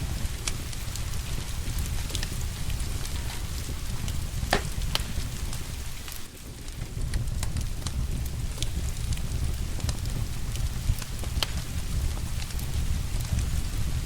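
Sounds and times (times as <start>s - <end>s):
low rumble: 0.0s - 14.0s
rain hissing: 0.0s - 14.0s
wood fire crackling: 0.0s - 14.0s.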